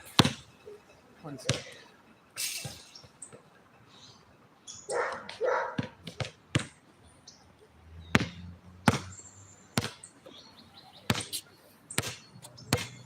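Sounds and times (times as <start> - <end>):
basketball bouncing on hard court: 0.2 - 0.4, 5.0 - 6.8, 8.1 - 9.1, 9.8 - 10.0, 11.1 - 11.3, 12.0 - 13.0
dog barking: 4.9 - 5.9.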